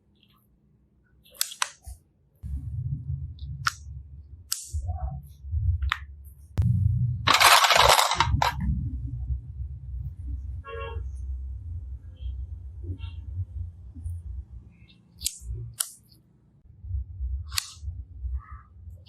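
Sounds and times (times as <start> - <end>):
low handling rumble: 2.4 - 14.6.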